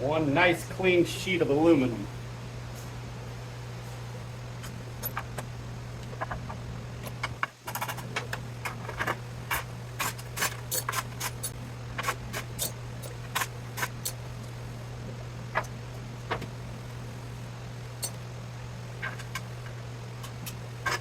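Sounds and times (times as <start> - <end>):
low steady hum: 0.0 - 21.0
metal parts clinking: 10.0 - 11.5.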